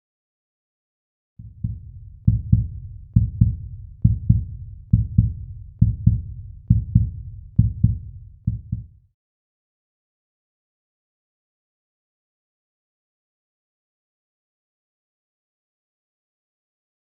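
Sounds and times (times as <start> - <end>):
heartbeat thumps: 1.4 - 9.0.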